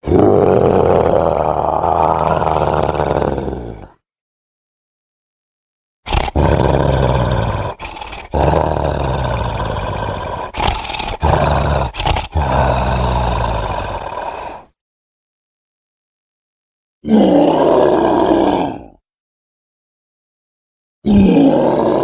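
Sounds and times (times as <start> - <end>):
ape roaring: 0.0 - 4.0, 6.1 - 14.7, 17.0 - 19.0, 21.0 - 22.0.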